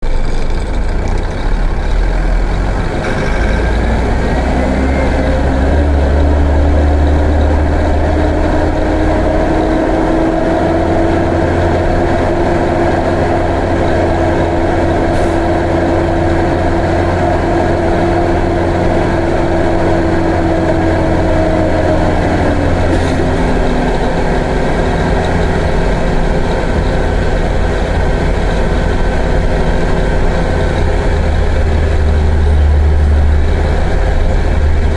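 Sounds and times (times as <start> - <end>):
bus diesel engine under load: 0.0 - 34.9.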